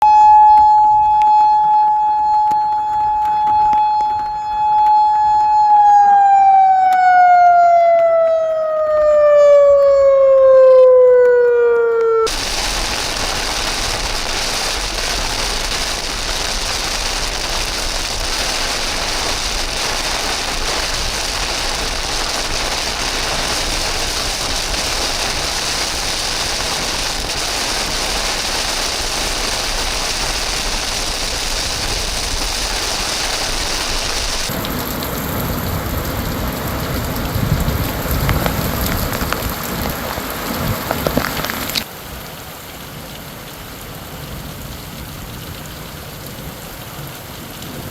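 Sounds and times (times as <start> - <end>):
heavy rain: 12.3 - 47.9.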